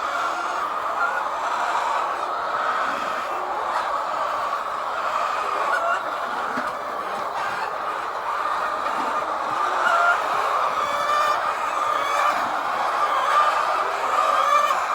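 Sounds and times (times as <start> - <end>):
hens clucking and calling: 0.0 - 14.9.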